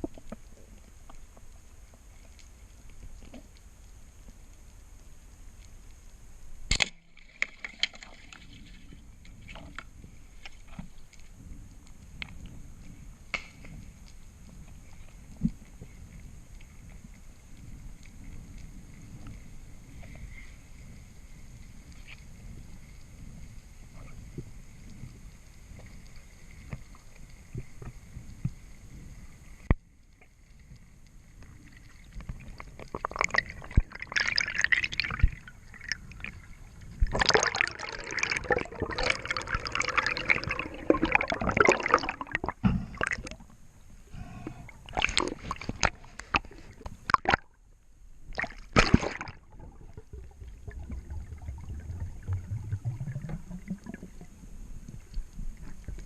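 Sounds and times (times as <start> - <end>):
water gurgling and splashing: 31.4 - 43.6, 44.4 - 47.6, 48.3 - 56.0.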